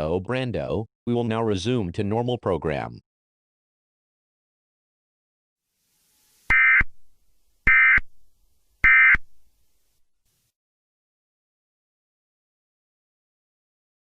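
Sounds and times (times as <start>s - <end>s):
screechy digital data bursts: 6.5s - 6.9s, 7.7s - 8.0s, 8.8s - 9.2s.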